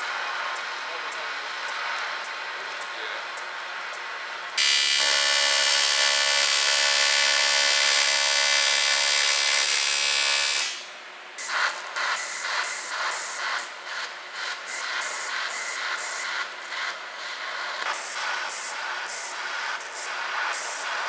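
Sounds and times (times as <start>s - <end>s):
welding arc buzzing: 4.6s - 21.0s.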